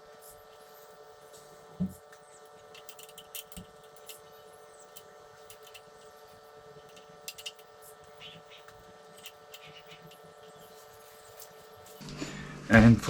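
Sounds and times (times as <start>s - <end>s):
steady electrical hum: 0.0s - 13.0s
metal tools clicking and tapping: 2.6s - 6.1s, 6.8s - 12.0s.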